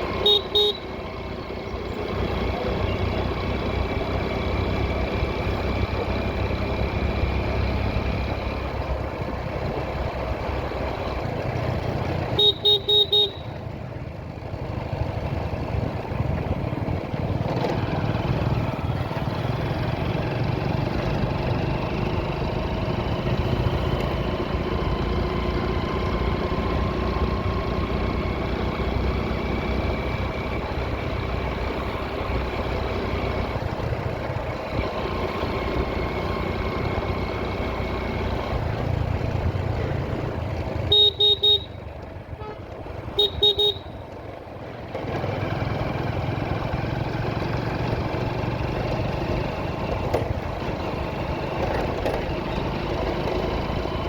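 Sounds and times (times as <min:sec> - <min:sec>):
vehicle road noise: 0:00.0 - 0:54.0
horn short beeps: 0:00.1 - 0:01.0, 0:12.3 - 0:13.6, 0:40.8 - 0:44.1.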